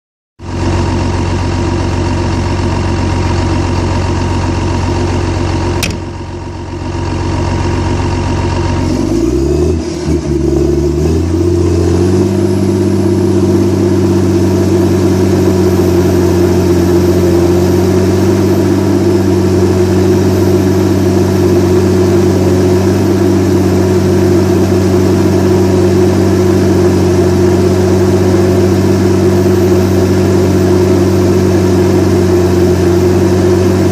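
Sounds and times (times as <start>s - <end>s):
diesel engine running: 0.4s - 33.9s
sharp click: 5.8s - 6.1s.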